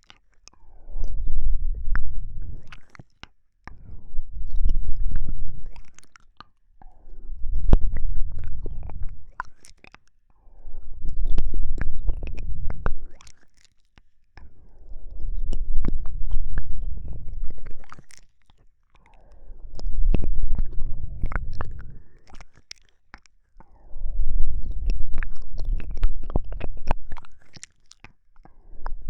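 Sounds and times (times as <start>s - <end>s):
wet mouth clicks: 0.0s - 10.2s, 11.0s - 29.0s
close-miked breathing: 0.6s - 2.8s, 3.7s - 5.8s, 10.4s - 13.1s, 14.4s - 17.9s.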